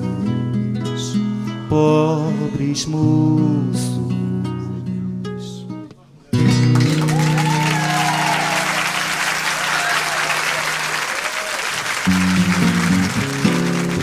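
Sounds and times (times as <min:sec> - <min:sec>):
acoustic guitar song: 0:00.0 - 0:07.8, 0:12.0 - 0:14.0
audience clapping: 0:06.5 - 0:14.0.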